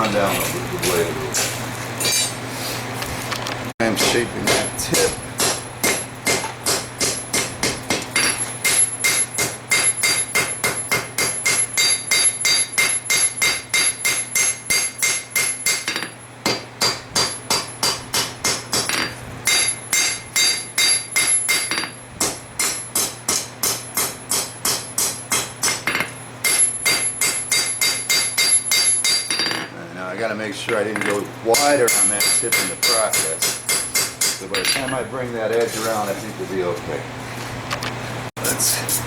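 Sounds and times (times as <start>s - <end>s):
hammer striking steel on anvil: 3.8s - 29.7s, 30.7s - 35.0s.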